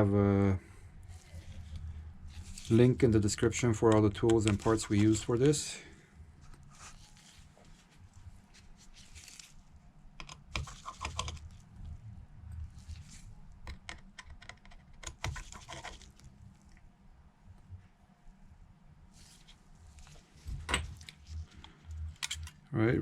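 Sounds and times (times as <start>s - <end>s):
screwdriver clicking and scratching: 10.2s - 11.6s, 13.6s - 16.3s, 22.1s - 22.6s.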